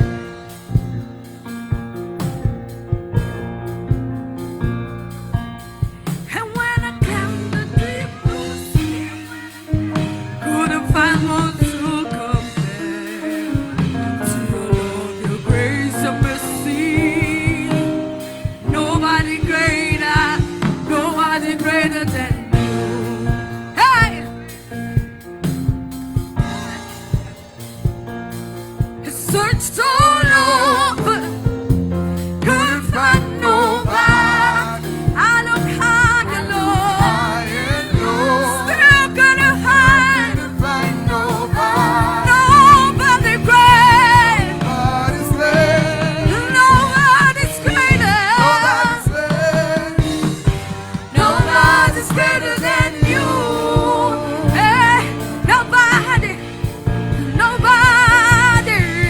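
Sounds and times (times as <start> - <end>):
gospel band with steady beat: 0.0 - 59.0
singer with strong vibrato: 32.4 - 50.5.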